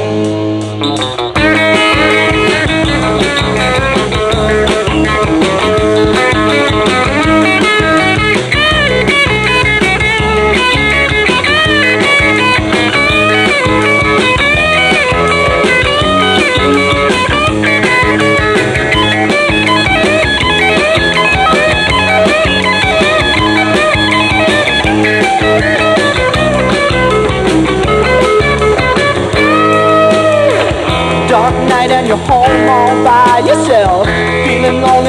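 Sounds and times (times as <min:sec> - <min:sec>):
bass and drums: 0:00.0 - 0:35.0
lead electric guitar: 0:00.0 - 0:35.0.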